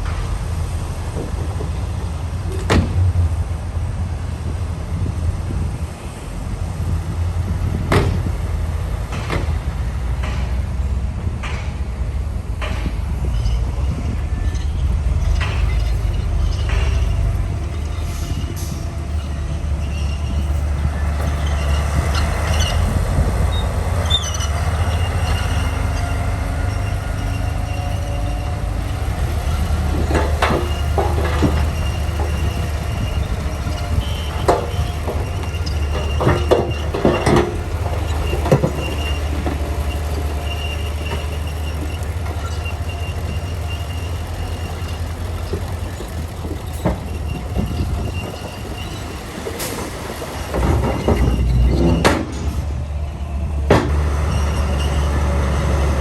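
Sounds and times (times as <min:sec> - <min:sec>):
bulldozer diesel engine droning: 0:00.0 - 0:56.0
steel tracks squealing: 0:04.3 - 0:56.0
sharp metallic clanks: 0:14.5 - 0:52.7.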